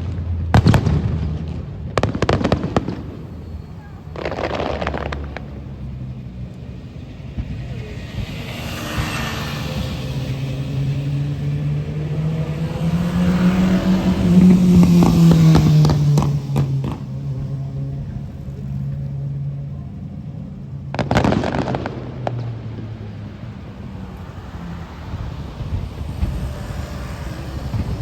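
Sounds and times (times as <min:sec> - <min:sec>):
fireworks crackling and bursting: 0:00.0 - 0:28.0.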